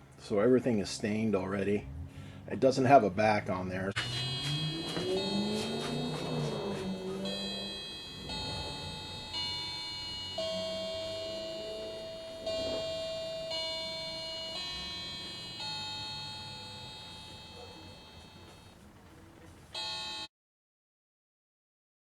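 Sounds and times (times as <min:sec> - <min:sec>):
bell-like chime notes: 0:04.0 - 0:18.7.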